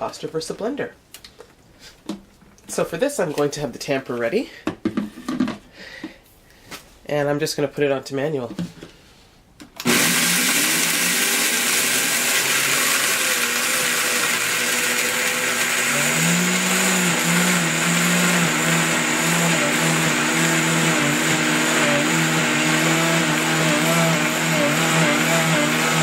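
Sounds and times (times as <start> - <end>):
blender grinding seeds: 9.8 - 26.0.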